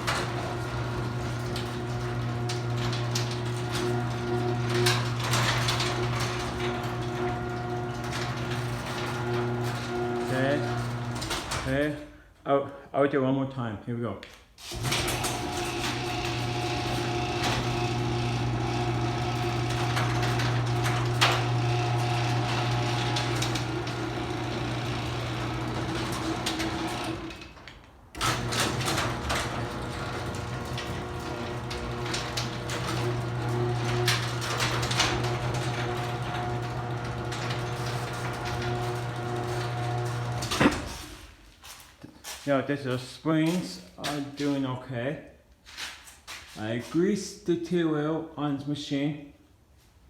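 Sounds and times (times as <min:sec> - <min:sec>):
door rattling and clicking: 0:00.0 - 0:11.8, 0:14.8 - 0:41.3
garage door opener motor humming: 0:00.0 - 0:11.9, 0:14.7 - 0:41.4.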